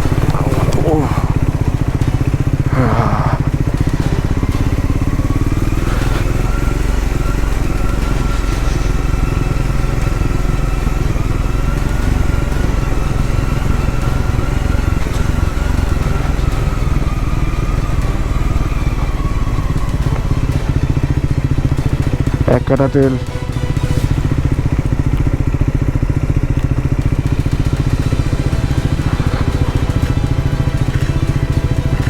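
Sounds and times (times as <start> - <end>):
single-cylinder engine running: 0.0 - 32.0.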